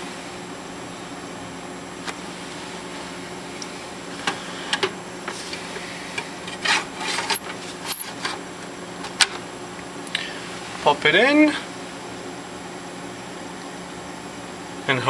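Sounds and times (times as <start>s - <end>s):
scraping and rubbing: 5.2s - 8.4s.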